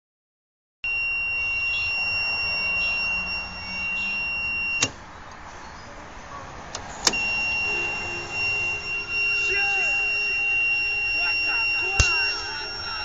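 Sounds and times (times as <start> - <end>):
high-pitched buzzing tone: 0.8 - 5.0, 7.1 - 13.0.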